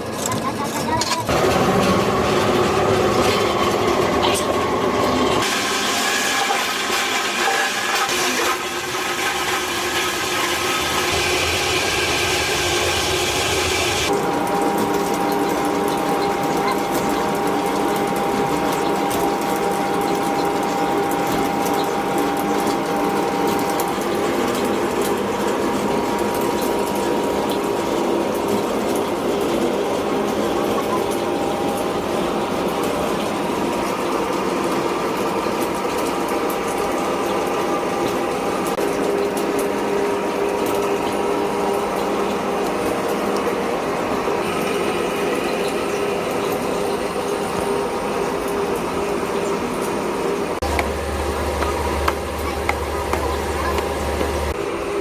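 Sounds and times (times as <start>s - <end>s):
steady machine tone: 0.0s - 5.6s, 9.8s - 55.0s
factory machinery clattering: 0.0s - 55.0s.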